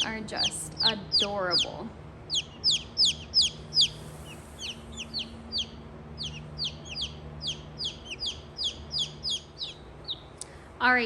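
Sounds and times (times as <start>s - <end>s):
baby chicks peeping: 0.0s - 10.6s
faint low hum: 0.0s - 11.0s.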